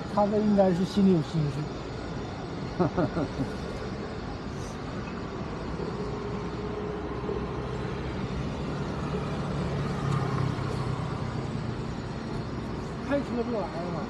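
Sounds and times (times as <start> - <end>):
car engine and tyre noise: 3.6 - 14.0.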